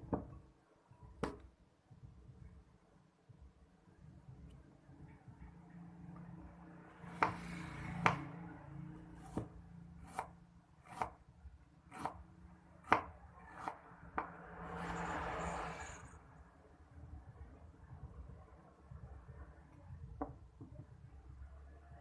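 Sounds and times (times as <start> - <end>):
knife chopping on cutting board: 7.2 - 8.3, 9.2 - 11.2, 11.9 - 12.2, 12.8 - 14.3.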